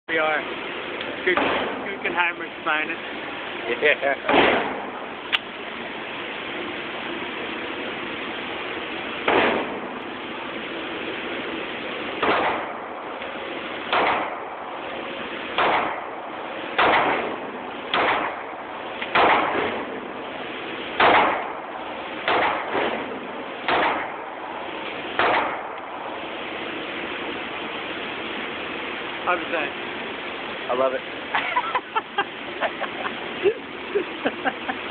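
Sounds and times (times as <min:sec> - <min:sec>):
background hiss: 0:00.1 - 0:34.9
gunshots: 0:01.3 - 0:01.8, 0:04.2 - 0:05.0, 0:09.2 - 0:10.0, 0:12.2 - 0:12.9, 0:13.8 - 0:14.6, 0:15.5 - 0:20.0, 0:21.0 - 0:24.4, 0:25.0 - 0:26.2.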